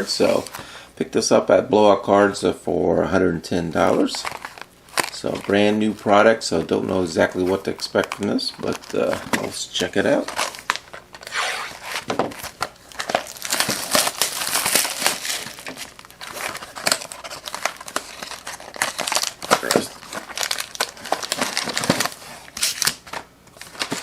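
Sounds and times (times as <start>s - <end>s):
plastic wrapping crinkling and tearing: 3.8s - 6.2s, 7.2s - 24.0s.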